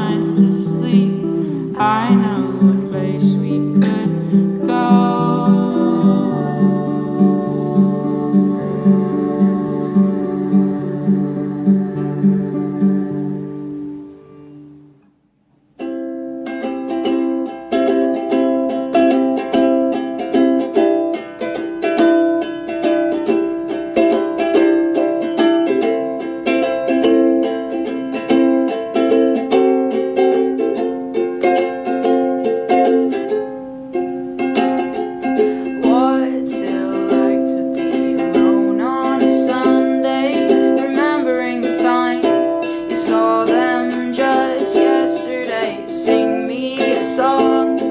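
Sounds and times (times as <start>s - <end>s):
person singing: 0.0s - 14.8s, 34.6s - 47.9s
plucked ukulele song: 0.0s - 47.9s.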